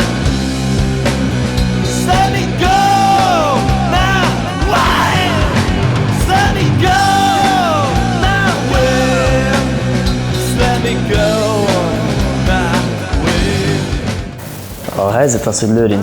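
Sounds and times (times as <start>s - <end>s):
rock band with drums: 0.0s - 16.0s
singer holding long notes: 1.9s - 14.3s.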